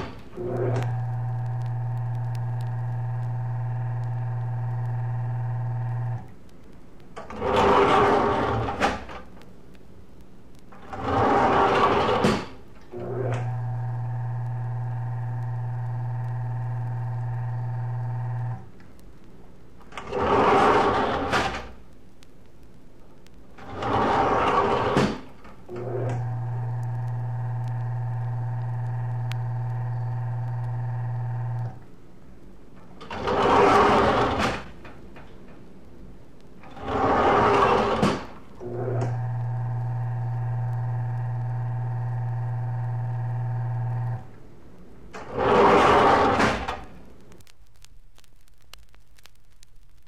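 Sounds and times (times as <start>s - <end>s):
elevator motor humming: 0.0s - 6.3s, 10.8s - 18.7s, 23.6s - 31.9s, 36.6s - 44.4s
elevator gate sliding: 10.8s - 13.6s, 19.9s - 21.7s, 23.6s - 26.3s, 33.0s - 34.8s, 36.6s - 39.2s.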